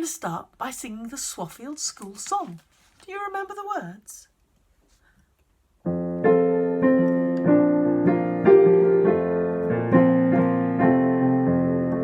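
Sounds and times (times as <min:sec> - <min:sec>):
piano playing chords and melody: 0:05.8 - 0:12.0.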